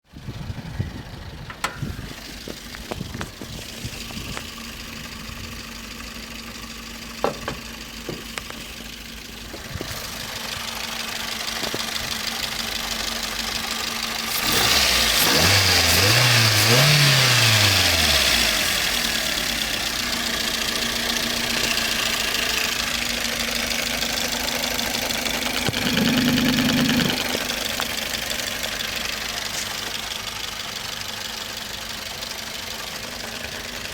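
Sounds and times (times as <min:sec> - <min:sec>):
engine ticking: 0:00.1 - 0:33.9
car engine idling with knock: 0:00.4 - 0:14.4, 0:16.3 - 0:33.9
engine revving: 0:13.4 - 0:30.4.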